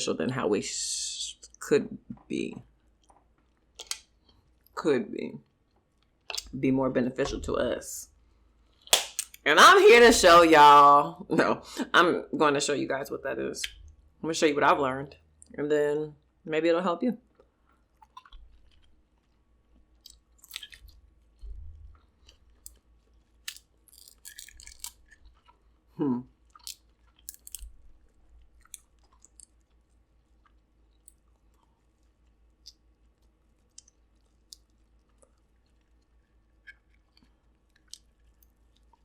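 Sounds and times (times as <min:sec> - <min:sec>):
chewing with wet mouth clicks: 0:06.0 - 0:06.6, 0:17.3 - 0:21.0, 0:26.4 - 0:39.0.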